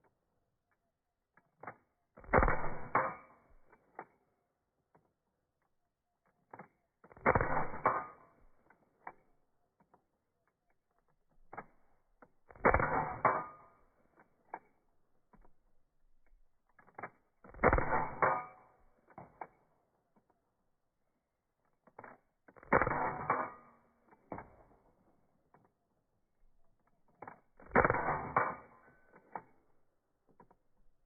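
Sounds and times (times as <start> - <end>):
small clicks: 0.0 - 20.5, 21.4 - 31.0
slowed-down pistol shots: 1.6 - 4.2, 6.6 - 9.2, 11.2 - 15.6, 16.2 - 20.3, 21.9 - 25.7, 26.4 - 31.0.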